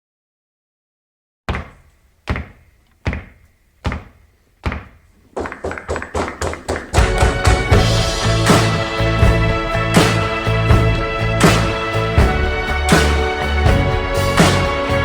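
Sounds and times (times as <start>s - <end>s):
heavy thuds: 1.5s - 14.1s
quick run of hits: 5.3s - 15.0s
music: 6.3s - 15.0s.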